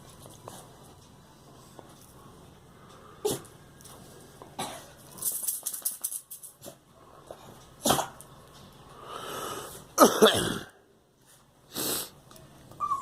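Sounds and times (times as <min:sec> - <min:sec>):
girl coughing: 0:04.6 - 0:04.9, 0:10.0 - 0:10.7.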